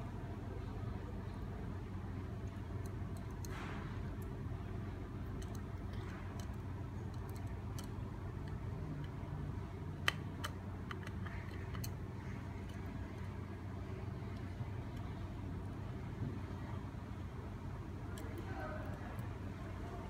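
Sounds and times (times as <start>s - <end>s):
steady low hum: 0.0s - 20.0s
small clicks and taps handling objects: 2.3s - 4.4s, 5.2s - 15.2s, 18.0s - 20.0s.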